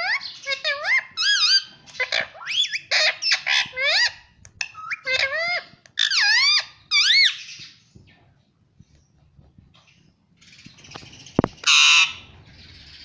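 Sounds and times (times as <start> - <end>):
parrots chirping and whistling: 0.0 - 7.8, 10.8 - 13.0.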